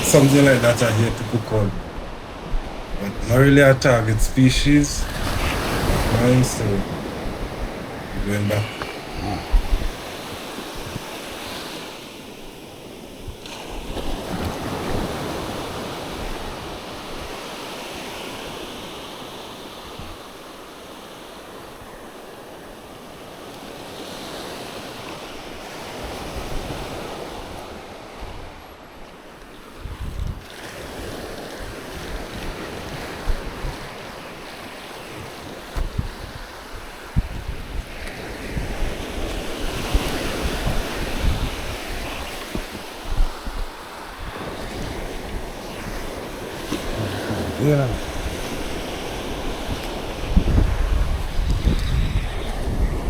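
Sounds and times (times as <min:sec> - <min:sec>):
sea waves washing: 0:00.0 - 0:19.9, 0:30.4 - 0:53.0
wind rumbling on microphone: 0:05.0 - 0:11.8, 0:29.7 - 0:53.0.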